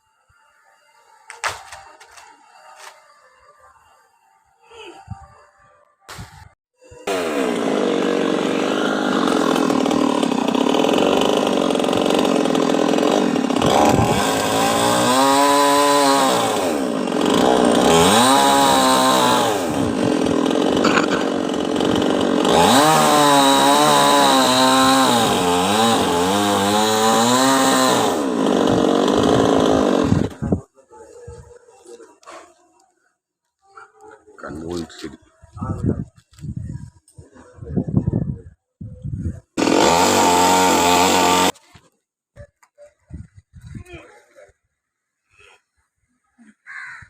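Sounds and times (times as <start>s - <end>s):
chainsaw cutting tree trunk: 7.0s - 30.6s, 39.6s - 41.6s.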